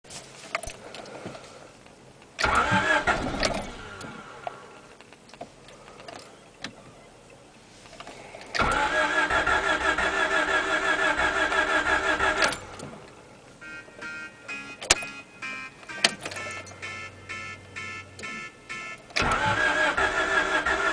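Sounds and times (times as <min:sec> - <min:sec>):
engine cranking without starting: 0:02.4 - 0:04.5, 0:08.4 - 0:13.1, 0:19.1 - 0:20.9.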